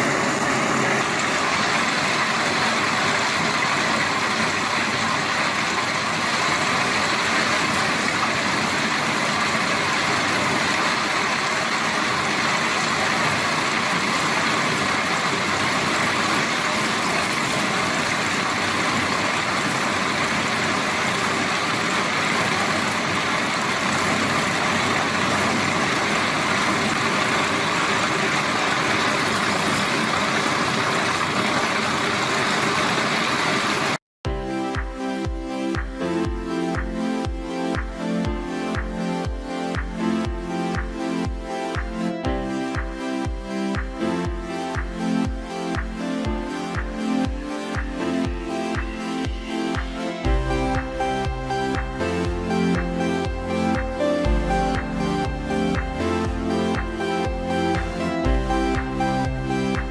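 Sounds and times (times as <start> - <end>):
machine engine running: 0.0 - 34.0.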